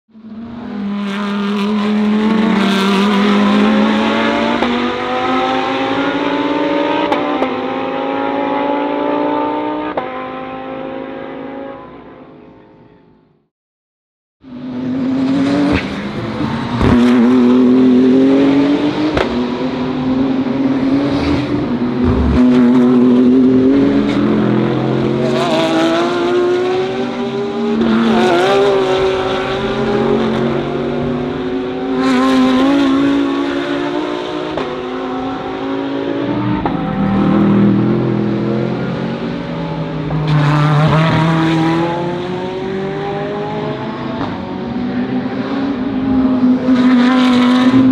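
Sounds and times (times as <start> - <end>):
race car engines passing: 14.5 - 47.9.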